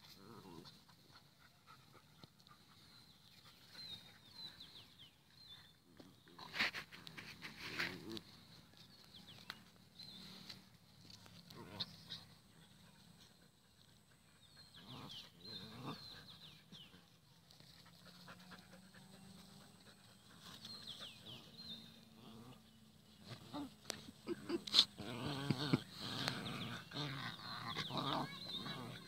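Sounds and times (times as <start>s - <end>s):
dogs panting: 0.6s - 7.9s, 11.9s - 22.0s.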